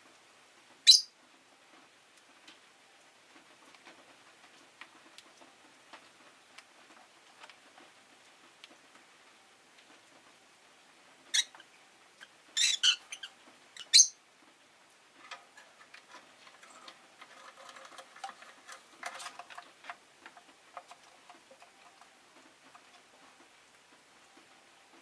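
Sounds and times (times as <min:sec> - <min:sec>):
lovebirds chirping shrilly: 0:00.9 - 0:01.1, 0:12.6 - 0:14.2.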